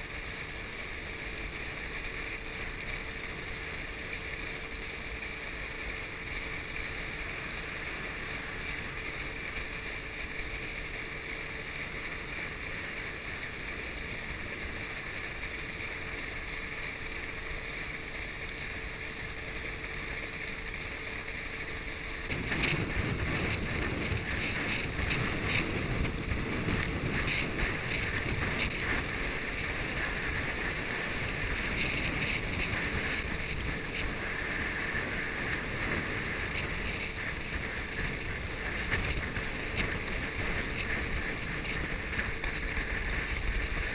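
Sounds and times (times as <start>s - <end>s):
motorboat engine running: 0.0s - 43.9s
rushing water: 0.0s - 43.9s
rushing wind: 18.9s - 43.9s.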